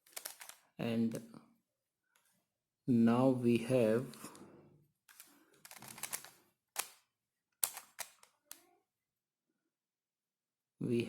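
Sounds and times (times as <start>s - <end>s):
plastic puzzle clicking and rattling: 0.0s - 0.8s, 5.1s - 8.7s.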